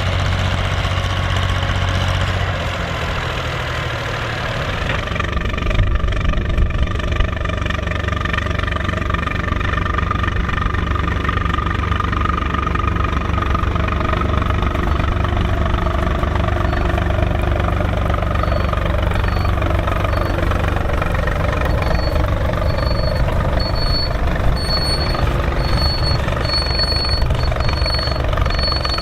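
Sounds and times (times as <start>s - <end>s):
tractor diesel engine running: 0.0s - 29.0s
short high beeps: 14.8s - 29.0s.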